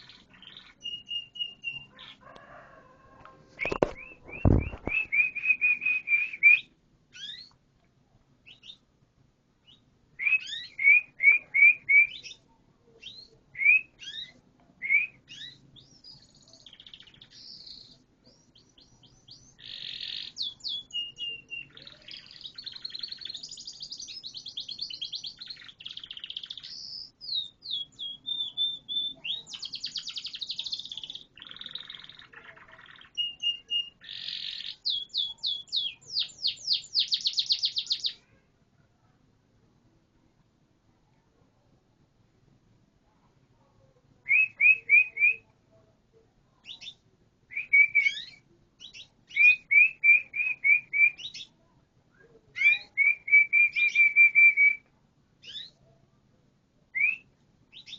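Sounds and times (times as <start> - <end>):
canary singing trills: 0.0 - 2.7, 3.6 - 7.6, 8.4 - 8.8, 9.6 - 38.2, 46.6 - 51.6, 52.6 - 55.8, 57.0 - 57.9.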